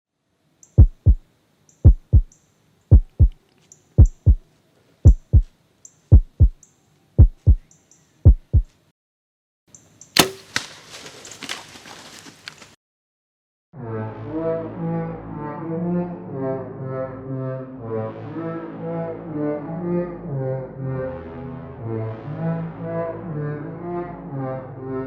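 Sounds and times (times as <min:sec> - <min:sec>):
heartbeat thumps: 0:00.8 - 0:01.2, 0:01.8 - 0:02.3, 0:02.9 - 0:03.4, 0:04.0 - 0:04.4, 0:05.0 - 0:05.5, 0:06.1 - 0:06.6, 0:07.2 - 0:08.7
sharp crack: 0:10.2 - 0:11.7.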